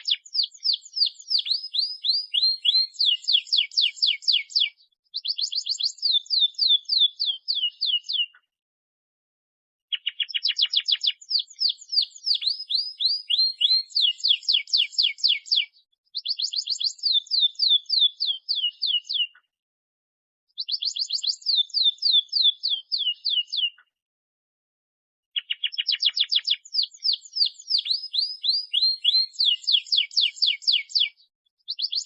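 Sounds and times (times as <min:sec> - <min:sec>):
canary trilling song: 0:00.0 - 0:08.4, 0:09.9 - 0:19.4, 0:20.6 - 0:23.8, 0:25.4 - 0:32.0.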